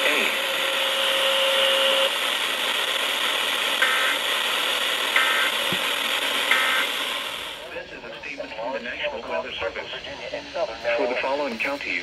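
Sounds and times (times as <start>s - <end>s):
radio broadcast hiss: 3.8s - 4.2s, 5.1s - 12.0s
steady tone: 6.5s - 7.9s.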